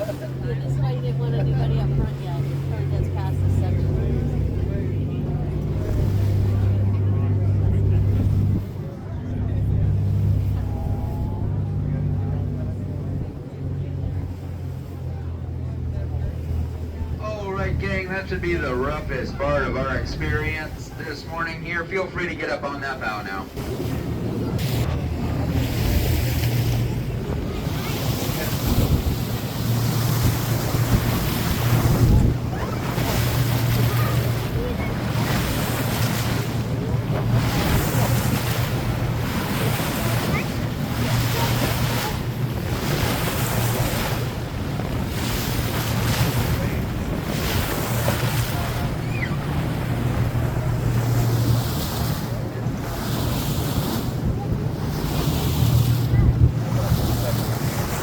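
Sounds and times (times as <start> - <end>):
boat engine humming: 0.0 - 58.0
water splashing against hull: 0.0 - 58.0
wind buffeting microphone: 23.3 - 58.0.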